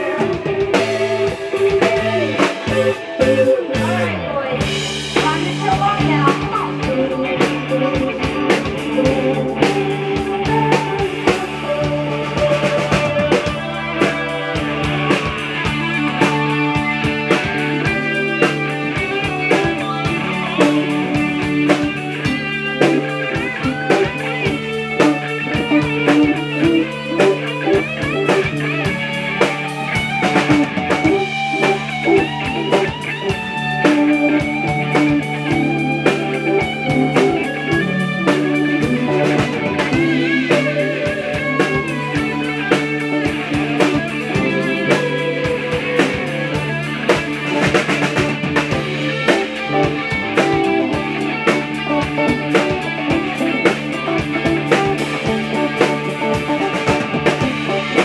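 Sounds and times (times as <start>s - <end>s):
drum kit beat: 0.0s - 58.0s
electric guitar: 0.0s - 58.0s.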